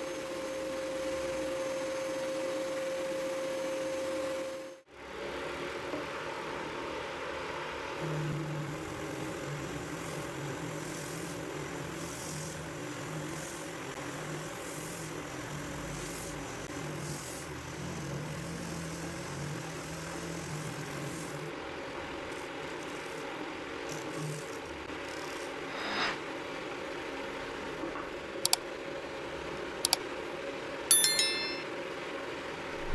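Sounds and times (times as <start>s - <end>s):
drum sander motor running: 8.0s - 21.5s.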